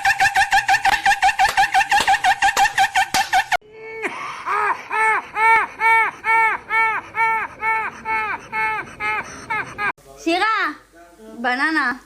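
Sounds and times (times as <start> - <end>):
high-pitched rapid giggling: 4.5 - 9.9.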